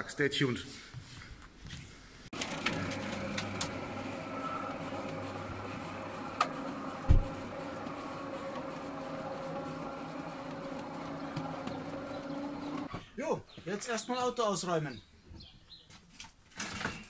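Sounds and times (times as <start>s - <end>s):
low mechanical hum: 2.4s - 12.9s
heavy low thump: 7.0s - 7.4s.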